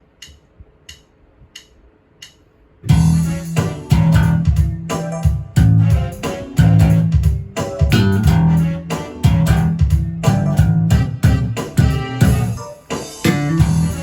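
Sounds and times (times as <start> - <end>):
backing rhythm with cymbal strokes: 0.0 - 14.0
sharp count-in clicks: 0.1 - 2.5
electric bass riff: 2.9 - 12.6, 13.2 - 14.0.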